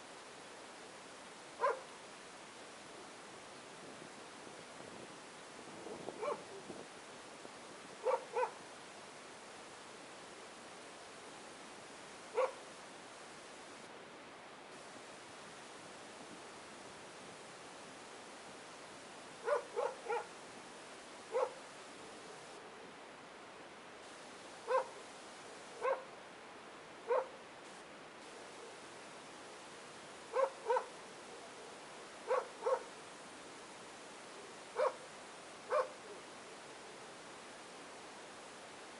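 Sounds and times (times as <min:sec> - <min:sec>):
steady hiss: 0:00.0 - 0:38.9
dog barking: 0:01.6 - 0:01.9, 0:06.2 - 0:06.5, 0:08.0 - 0:08.6, 0:12.3 - 0:12.6, 0:19.4 - 0:20.3, 0:21.3 - 0:21.6, 0:24.6 - 0:25.0, 0:25.8 - 0:26.1, 0:27.1 - 0:27.4, 0:30.3 - 0:30.9, 0:32.3 - 0:32.9, 0:34.8 - 0:35.0, 0:35.7 - 0:36.0.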